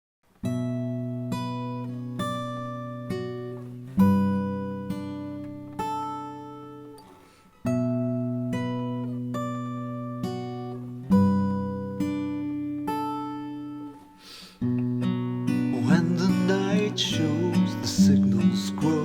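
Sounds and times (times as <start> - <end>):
acoustic guitar chords: 0.3 - 19.0.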